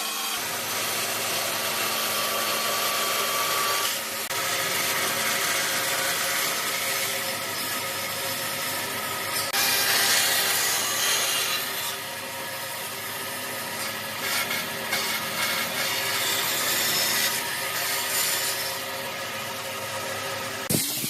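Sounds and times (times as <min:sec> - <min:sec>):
tool rasping wood: 0:13.6 - 0:19.2.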